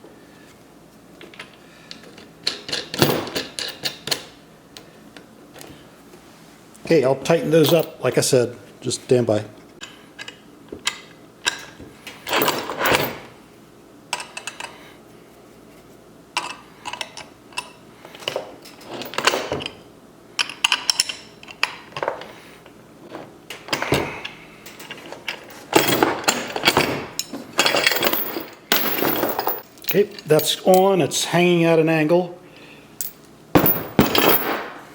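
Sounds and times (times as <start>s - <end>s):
metal hardware clinking: 7.5s - 8.0s, 24.7s - 31.0s, 33.0s - 34.8s.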